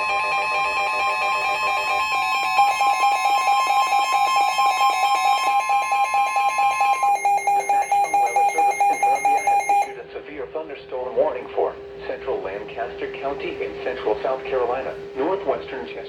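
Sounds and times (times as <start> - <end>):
rapid pulsing beeps: 0.0 - 10.0
steady warning alarm tone: 0.0 - 10.0.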